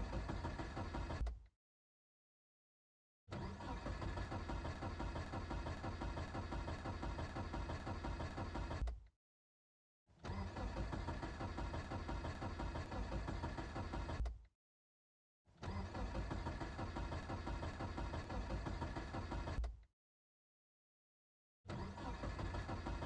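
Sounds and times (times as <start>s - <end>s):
car engine cranking: 0.0s - 1.4s, 3.3s - 9.0s, 10.2s - 14.4s, 15.6s - 19.7s, 21.7s - 23.0s.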